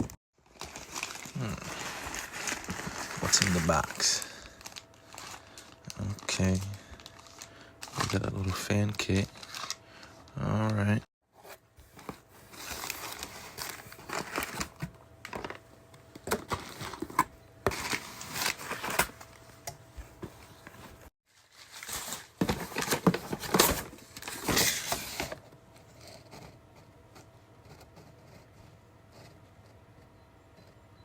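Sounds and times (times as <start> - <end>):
packaging crinkling and rustling: 0.4 - 9.8, 11.8 - 19.6, 20.2 - 25.4.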